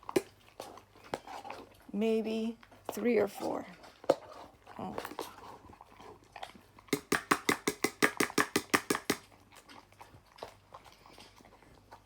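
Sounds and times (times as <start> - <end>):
dog chomping food: 0.0 - 1.8, 3.8 - 12.0.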